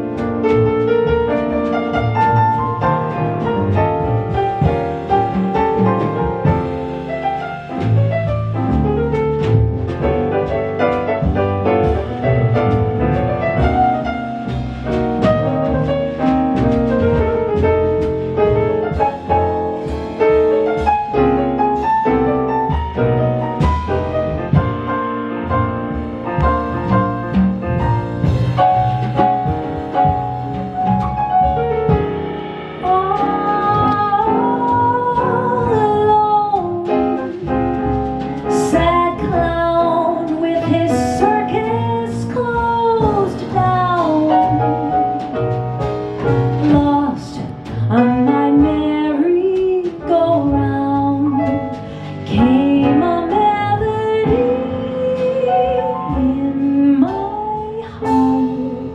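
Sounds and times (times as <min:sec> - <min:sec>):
jazz piano: 0:00.0 - 0:58.9
woman singing: 0:32.8 - 0:37.8, 0:38.5 - 0:45.3, 0:46.6 - 0:58.9.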